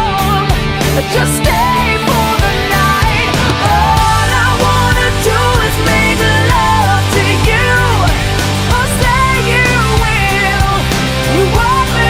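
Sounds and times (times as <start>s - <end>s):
rock music with guitar: 0.0s - 12.0s.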